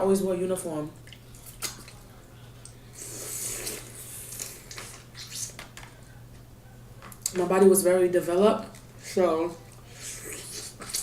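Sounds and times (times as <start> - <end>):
wet chewing sounds: 1.0 - 5.6, 9.7 - 11.0.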